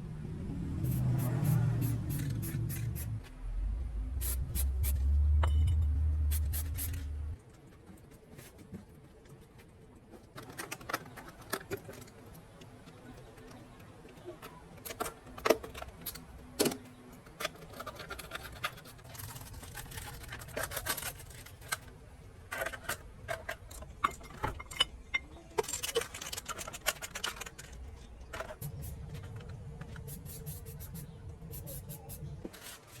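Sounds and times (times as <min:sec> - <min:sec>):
low steady hum: 0:00.0 - 0:08.0
metal parts and tools clinking: 0:04.2 - 0:07.2, 0:14.4 - 0:33.0.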